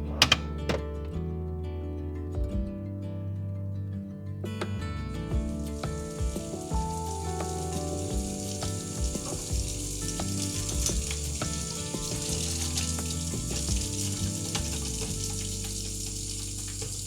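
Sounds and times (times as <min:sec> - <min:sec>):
soft background music: 0:00.0 - 0:17.0
tap water splashing in a sink: 0:05.5 - 0:17.0.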